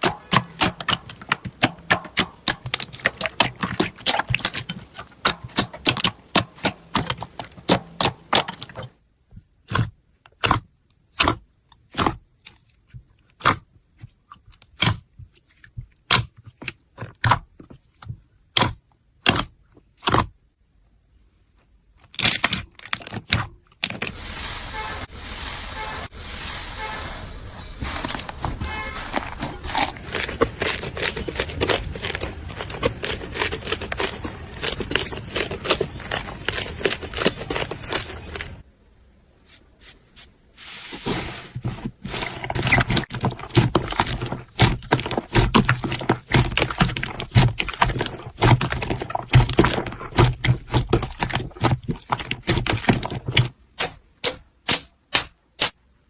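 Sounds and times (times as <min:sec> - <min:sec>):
slime crackling and popping: 0:00.0 - 0:08.9.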